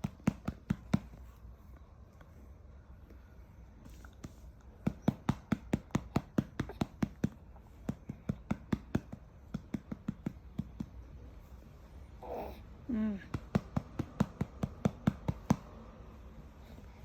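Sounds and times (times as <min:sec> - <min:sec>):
soft pats on baby's back: 0:03.8 - 0:11.5.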